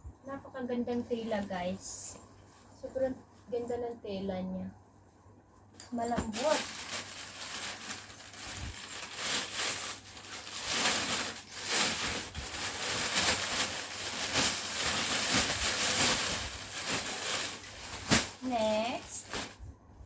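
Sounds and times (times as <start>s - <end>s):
fabric backpack rustling: 6.2s - 19.6s.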